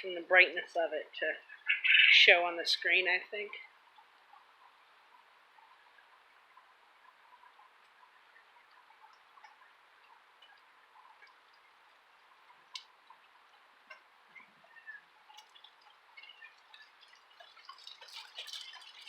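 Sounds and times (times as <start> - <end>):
small ticks: 3.9 - 19.0.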